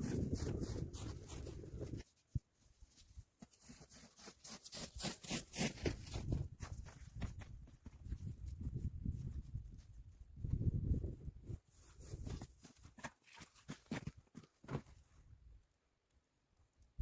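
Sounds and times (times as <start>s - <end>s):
low wind rumble: 0.0s - 2.0s, 8.2s - 11.6s
footsteps crunching through snow: 0.0s - 2.2s.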